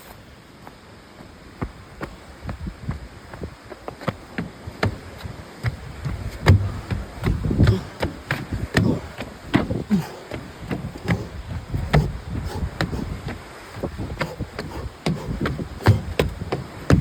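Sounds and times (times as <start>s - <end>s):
footsteps on a trail: 0.0s - 17.0s
low thumps and bumps: 5.6s - 17.0s.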